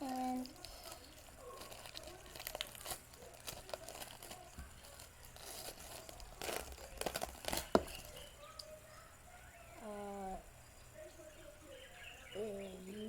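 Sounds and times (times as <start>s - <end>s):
plastic wrapper crinkling and tearing: 0.0s - 8.3s.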